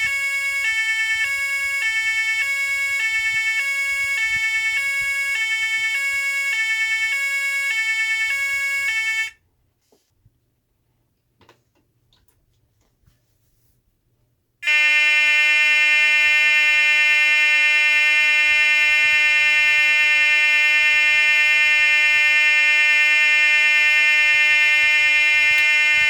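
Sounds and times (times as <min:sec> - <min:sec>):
electronic alarm tone: 0:00.0 - 0:09.3, 0:14.6 - 0:26.0.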